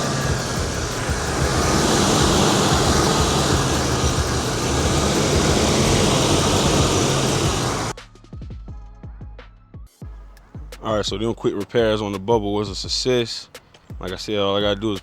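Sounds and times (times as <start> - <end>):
car engine and fan running: 0.0 - 7.9
low hum: 0.0 - 7.9.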